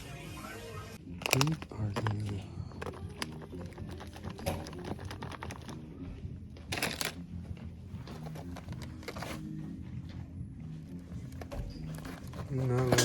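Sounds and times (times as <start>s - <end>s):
small objects clicking and tapping: 1.1s - 5.9s, 6.7s - 7.2s.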